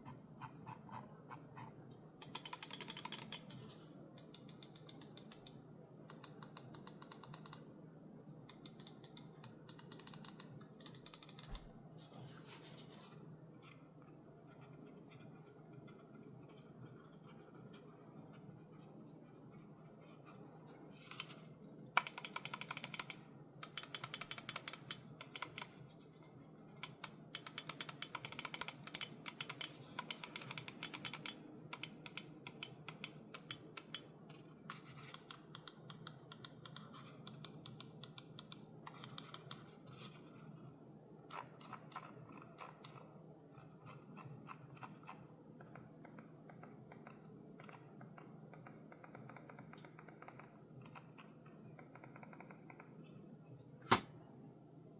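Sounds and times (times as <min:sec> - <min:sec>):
mouse buttons clicking rapidly: 0:00.0 - 0:03.6, 0:04.2 - 0:07.7, 0:08.5 - 0:11.8, 0:21.0 - 0:39.8, 0:41.3 - 0:53.2.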